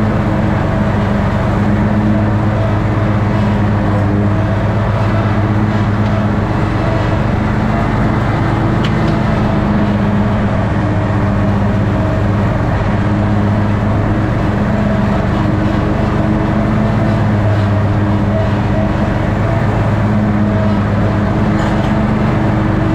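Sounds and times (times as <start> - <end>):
lawn tractor engine mowing: 0.0 - 22.9.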